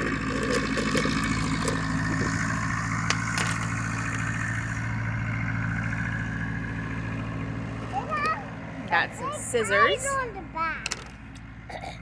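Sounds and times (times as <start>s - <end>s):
tractor engine running: 0.0s - 11.8s.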